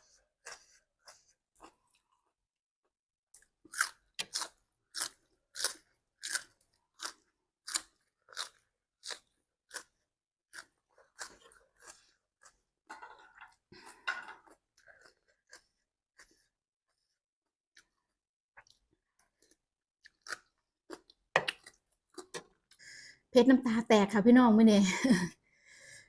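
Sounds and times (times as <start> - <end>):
person chewing crunchy food: 0.0 - 2.4, 3.4 - 22.8.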